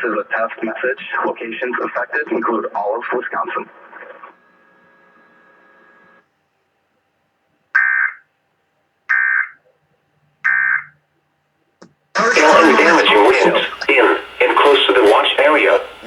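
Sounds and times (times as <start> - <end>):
faint hum: 0.0 - 16.0
digital data tone bursts: 12.2 - 16.0.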